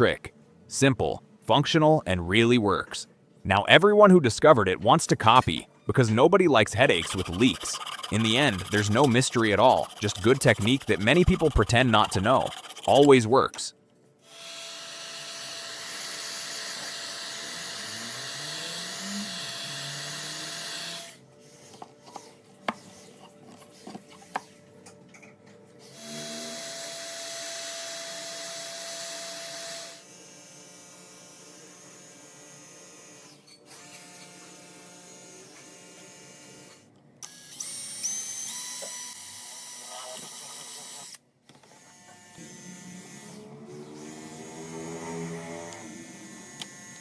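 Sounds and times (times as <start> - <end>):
small electric motor running: 6.8 - 13.1.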